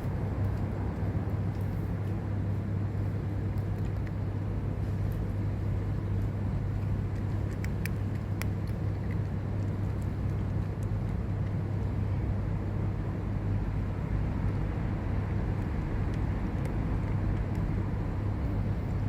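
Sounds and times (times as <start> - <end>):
constant hum: 0.0 - 19.0
low outdoor rumble: 0.0 - 19.0.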